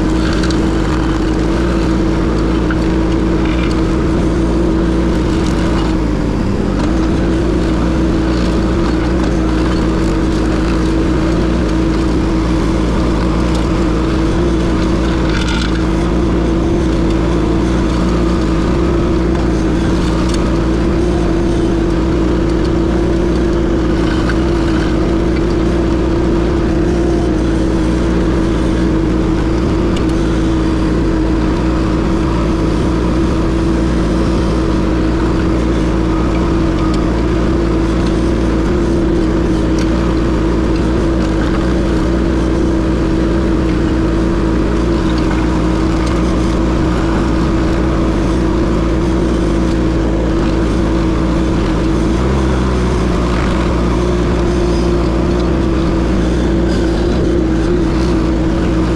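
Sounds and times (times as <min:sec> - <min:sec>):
skid steer engine running under load: 0:00.0 - 0:58.9.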